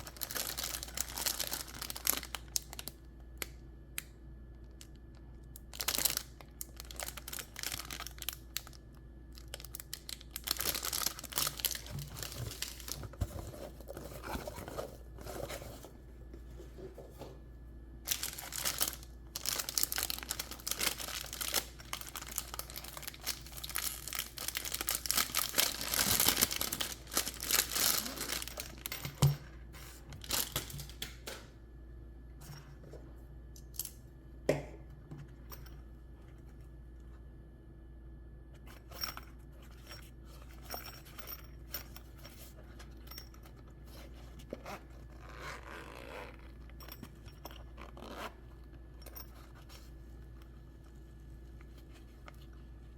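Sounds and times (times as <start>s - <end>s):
packaging tearing and crumpling: 0.0s - 2.9s, 5.7s - 8.7s, 9.4s - 13.0s, 18.1s - 29.0s, 30.2s - 31.0s.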